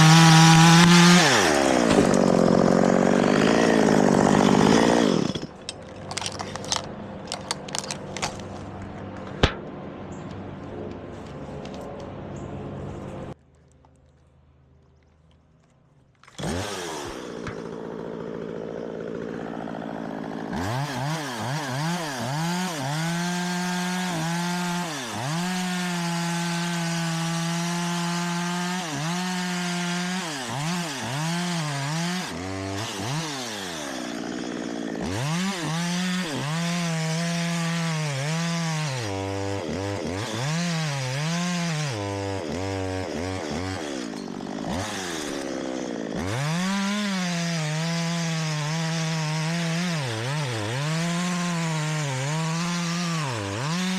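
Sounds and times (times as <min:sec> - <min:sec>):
chainsaw cutting wood: 0:00.0 - 0:09.6, 0:16.2 - 0:53.9.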